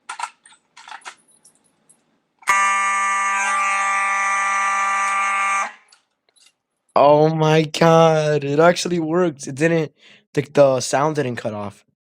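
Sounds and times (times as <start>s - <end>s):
fire alarm steady tone: 2.5s - 5.8s.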